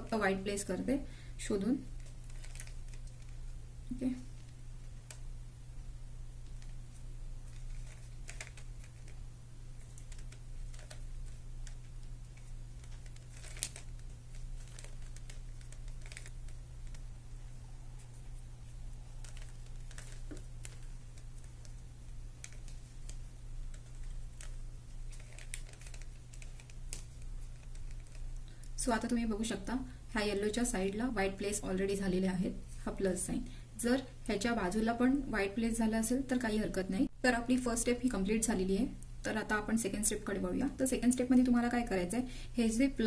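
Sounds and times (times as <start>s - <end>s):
plastic cube clicking: 12.8s - 17.0s, 22.4s - 28.2s.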